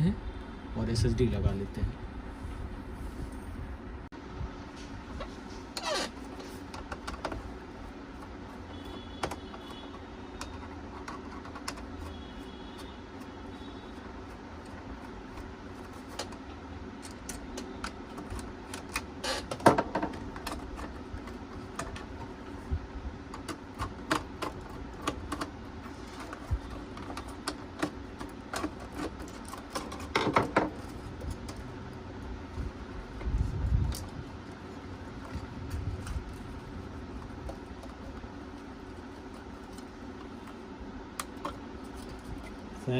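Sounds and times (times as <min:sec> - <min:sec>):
clicks and knocks of computer parts: 0:06.3 - 0:22.6, 0:23.3 - 0:31.7, 0:41.2 - 0:42.6.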